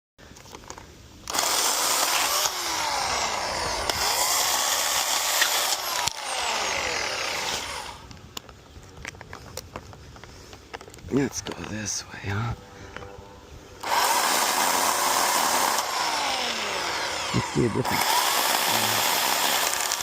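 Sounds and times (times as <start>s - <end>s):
chainsaw cutting wood: 1.2s - 8.1s, 13.8s - 20.0s
light clicks and crackles: 8.0s - 11.8s.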